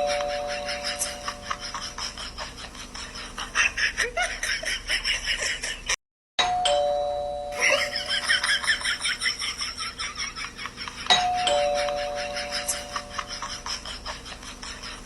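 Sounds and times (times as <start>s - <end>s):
bright rhythmic clicks: 0.0s - 1.9s, 11.0s - 13.9s
electronic doorbell chime: 6.4s - 8.4s, 11.1s - 13.2s.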